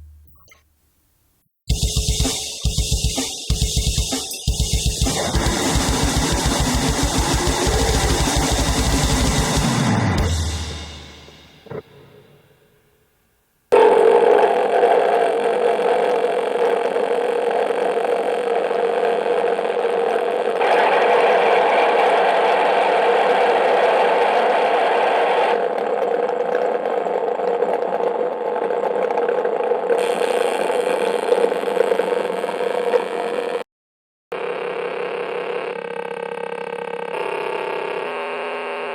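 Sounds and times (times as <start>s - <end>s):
distorted harsh noise music: 1.7s - 12.8s, 13.7s - 33.6s, 34.3s - 38.9s
steady drone: 3.4s - 12.2s.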